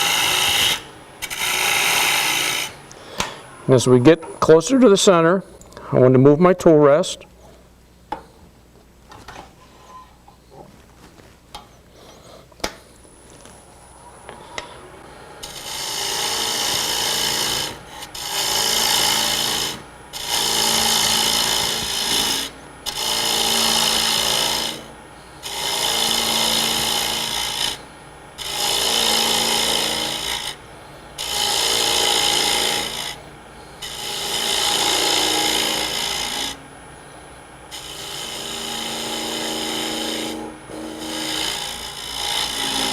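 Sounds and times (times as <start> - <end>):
lathe tool cutting wood: 0.0 - 2.8, 15.4 - 30.6, 31.2 - 33.2, 33.8 - 36.7, 37.6 - 42.9.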